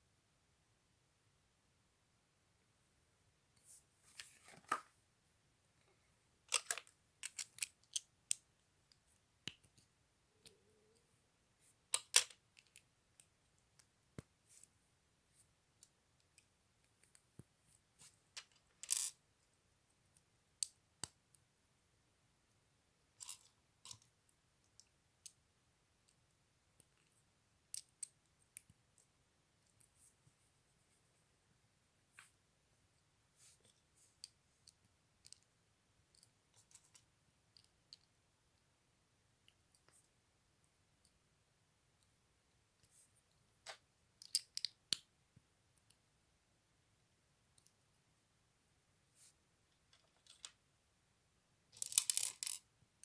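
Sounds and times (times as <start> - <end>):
plastic bricks clicking together: 51.8 - 52.6.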